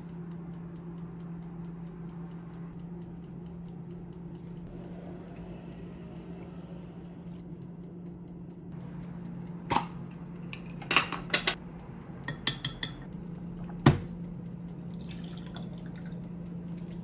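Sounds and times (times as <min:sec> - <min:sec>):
low hum: 0:00.0 - 0:17.0
dishes and cutlery clinking: 0:10.5 - 0:11.6, 0:12.3 - 0:13.1.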